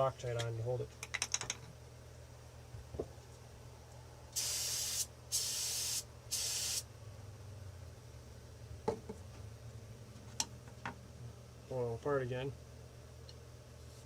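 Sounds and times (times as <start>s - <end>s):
aerosol spray hissing: 4.4s - 6.9s.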